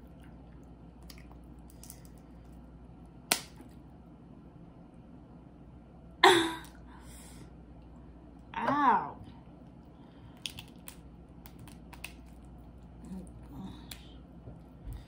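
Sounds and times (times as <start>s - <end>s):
shellfish shells cracking: 10.3s - 12.8s.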